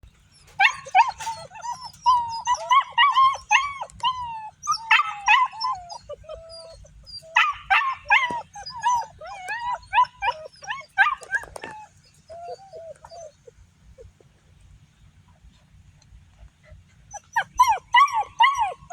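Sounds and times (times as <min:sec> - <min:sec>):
puppies yipping and whining: 0:00.2 - 0:14.5, 0:16.4 - 0:18.9.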